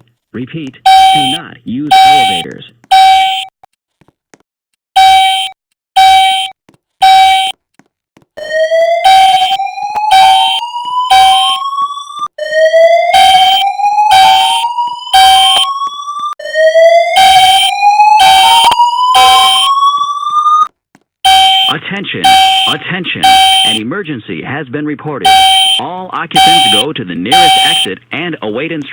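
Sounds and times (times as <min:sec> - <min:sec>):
fire alarm horn blasts: 0:00.9 - 0:03.5, 0:05.0 - 0:07.5, 0:08.4 - 0:20.7, 0:21.3 - 0:23.8, 0:25.2 - 0:27.9.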